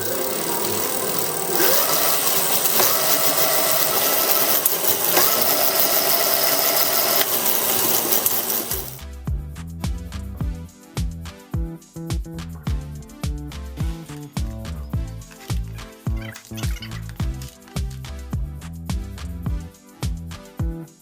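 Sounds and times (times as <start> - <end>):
power tool running: 0.0 - 9.0
background music: 0.0 - 21.0.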